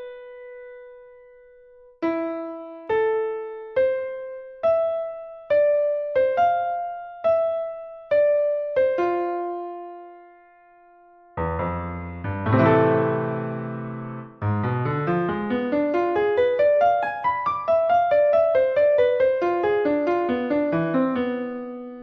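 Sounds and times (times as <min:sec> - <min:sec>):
slow piano melody: 0:00.0 - 0:22.0
loud piano chord: 0:08.6 - 0:22.0.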